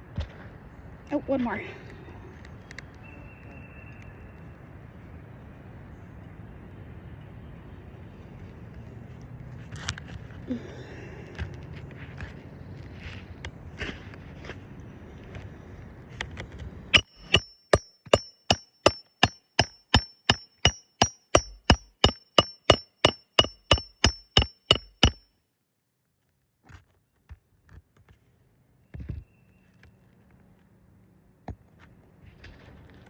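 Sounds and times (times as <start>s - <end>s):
hammer driving nails: 17.0s - 25.2s.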